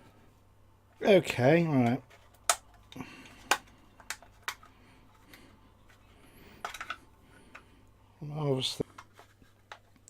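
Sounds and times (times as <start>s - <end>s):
plastic parts clicking together: 1.8s - 7.7s.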